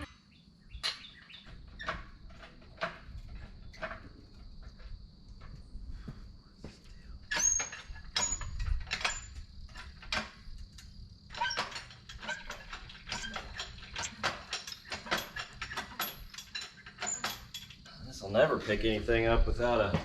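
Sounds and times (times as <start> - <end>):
metal tools clinking: 7.3 - 18.0.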